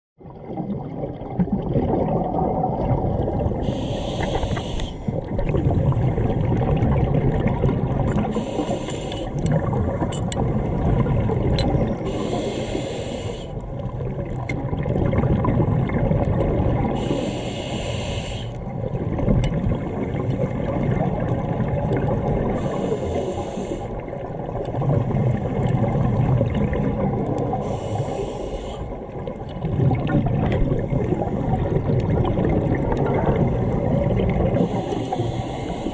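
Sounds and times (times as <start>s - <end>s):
exhaled bubbles rumbling: 0.2s - 35.9s
regulator breathing hiss: 3.6s - 5.1s, 8.3s - 9.4s, 12.1s - 13.6s, 17.0s - 18.6s, 22.6s - 24.0s, 27.6s - 28.9s, 34.6s - 35.9s.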